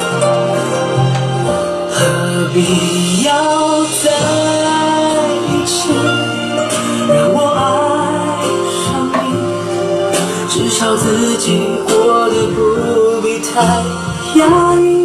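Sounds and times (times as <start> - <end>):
pop song with singing voice: 0.0 - 15.0.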